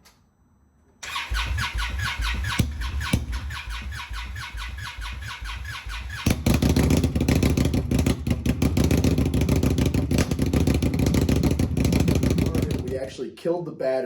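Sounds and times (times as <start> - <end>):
electric starter cranking engine: 1.0 - 6.7
motorcycle engine running: 1.8 - 13.1.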